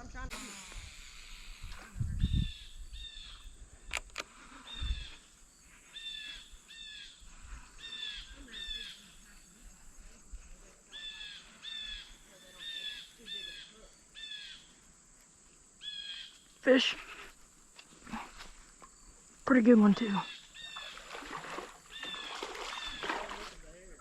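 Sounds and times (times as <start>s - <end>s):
bird calling: 4.2s - 9.7s, 10.9s - 14.9s, 15.8s - 23.5s.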